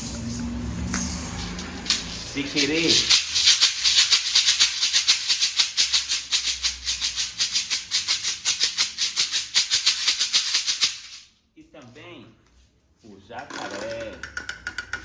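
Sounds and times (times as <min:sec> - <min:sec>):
bead gourd shaker rhythm: 0:00.0 - 0:11.3.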